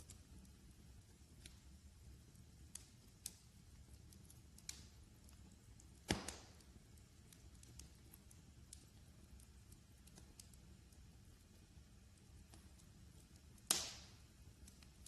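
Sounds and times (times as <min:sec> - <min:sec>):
wood fire crackling: 0:00.0 - 0:15.0
sharp pop of fire: 0:06.0 - 0:06.7, 0:13.6 - 0:14.2.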